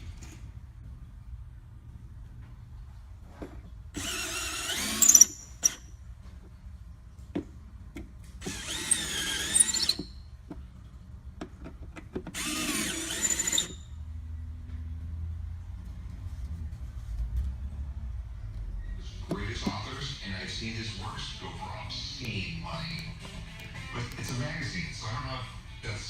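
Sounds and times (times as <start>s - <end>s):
power drill motor: 4.0s - 5.9s, 8.4s - 10.1s, 12.2s - 13.9s.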